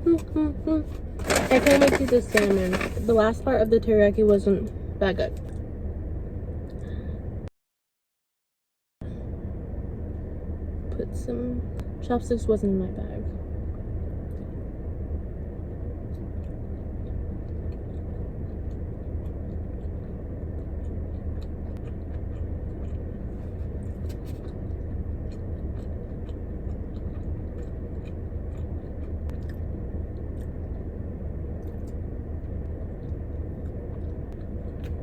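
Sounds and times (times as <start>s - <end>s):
low rumble in car cabin: 0.0s - 7.5s, 9.0s - 35.0s
person chewing: 16.1s - 35.0s.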